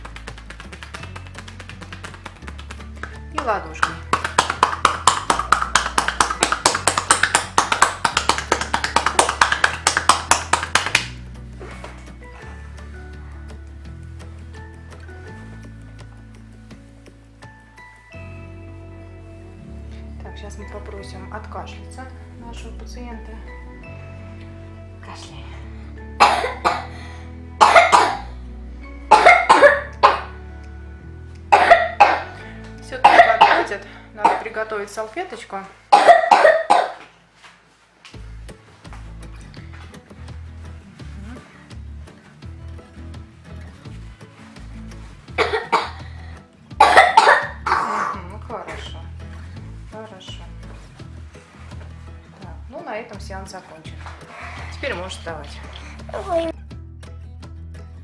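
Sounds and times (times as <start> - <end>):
palm patting a back: 0.0 - 18.1, 27.6 - 28.5, 35.9 - 56.5
background music with bass: 0.0 - 36.5, 38.1 - 58.0
child coughing: 26.2 - 27.0, 27.6 - 28.4, 29.1 - 30.3, 31.5 - 32.4, 33.0 - 34.6, 35.9 - 37.0, 45.4 - 46.2, 46.8 - 48.9.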